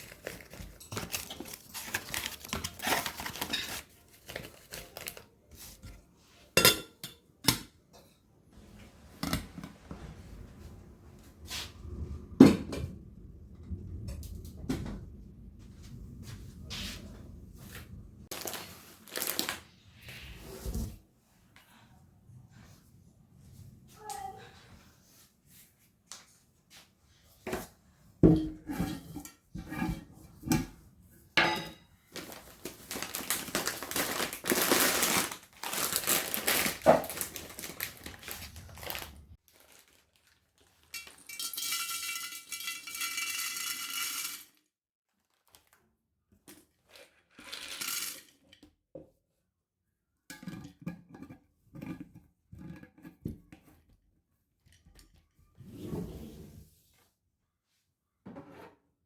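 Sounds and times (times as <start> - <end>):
dishes and utensils clinking: 0.2 - 5.1, 6.6 - 8.3, 31.4 - 32.0, 41.0 - 44.5.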